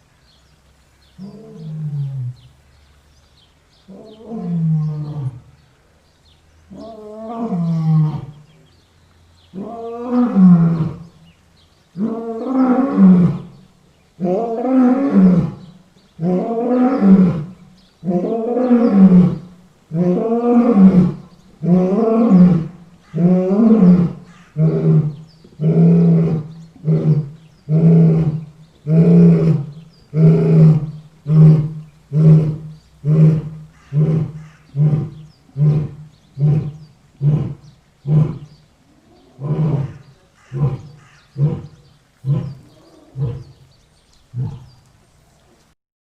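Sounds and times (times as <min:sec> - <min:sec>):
lion roaring: 0:14.2 - 0:43.6, 0:44.3 - 0:44.8.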